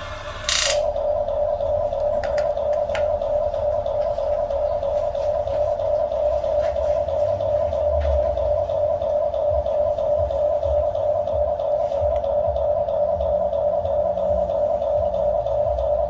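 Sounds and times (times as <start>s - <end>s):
small electric motor whine: 0.0s - 1.0s
low rumble: 0.0s - 16.0s.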